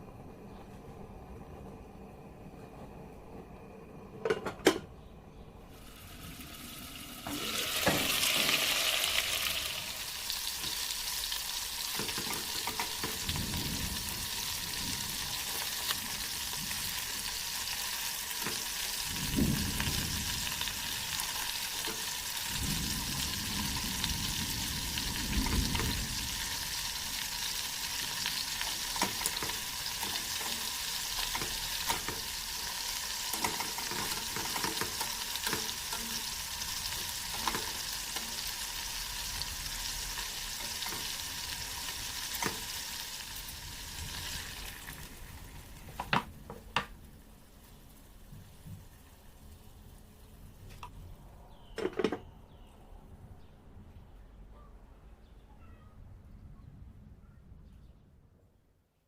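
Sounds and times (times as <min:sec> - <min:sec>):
chicken sizzling in a pot: 0:05.7 - 0:50.6.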